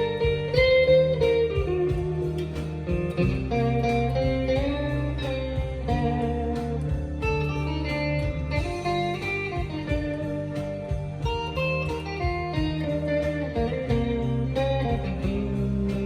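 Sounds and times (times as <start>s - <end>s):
clean electric guitar: 0.0s - 16.0s.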